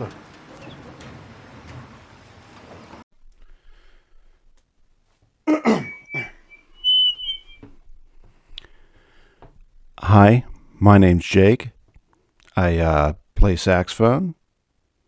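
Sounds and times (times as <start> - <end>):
high whistled tones: 5.7 - 7.7.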